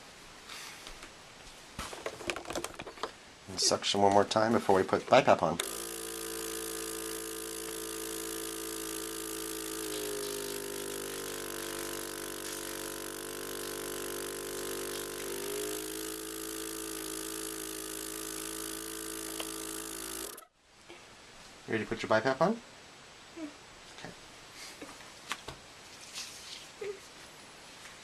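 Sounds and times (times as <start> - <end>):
suction machine motor running: 5.6 - 20.5.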